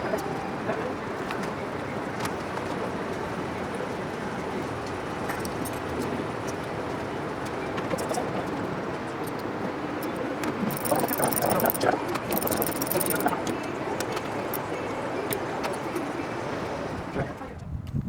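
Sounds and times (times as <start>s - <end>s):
steady background noise: 1.5s - 17.2s
mechanical clicking and clattering: 10.7s - 13.4s.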